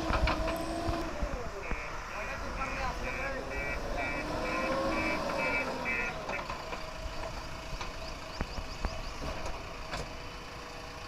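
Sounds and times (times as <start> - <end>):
heavy vehicle engine: 0.0 - 11.0
reversing alarm beeping: 3.0 - 6.2.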